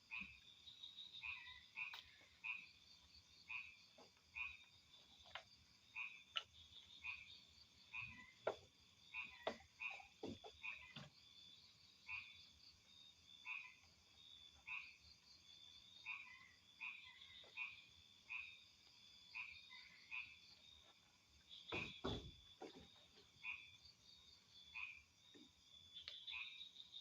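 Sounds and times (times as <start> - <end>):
frogs croaking: 0.0 - 27.0
dull thumps: 21.6 - 23.0.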